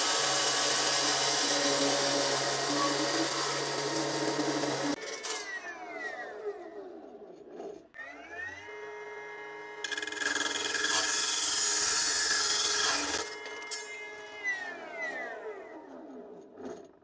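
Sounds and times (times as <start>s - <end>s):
saw cutting harsh rasp: 0.0s - 5.4s, 9.8s - 14.0s
electric saw motor whine: 0.0s - 6.4s, 8.0s - 15.8s.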